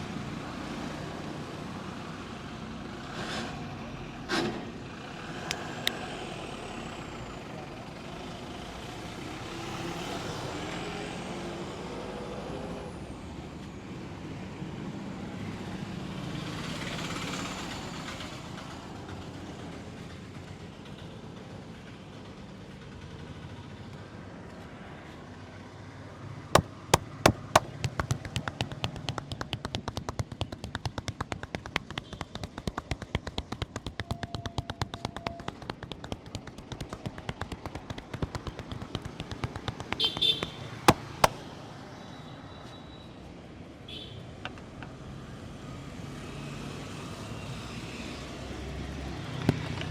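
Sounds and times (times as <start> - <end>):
roadside traffic noise: 0.0 - 49.9
rapid hand slaps: 26.6 - 41.4.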